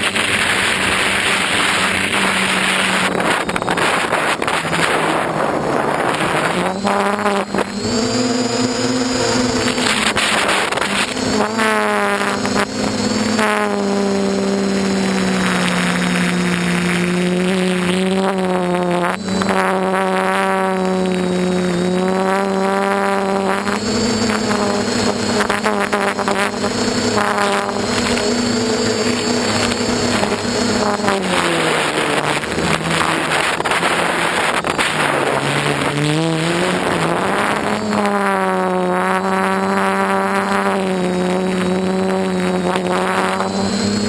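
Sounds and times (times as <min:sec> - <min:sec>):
rushing air: 0:00.0 - 0:17.9, 0:23.4 - 0:39.7
drone propellers whining: 0:00.0 - 0:44.0.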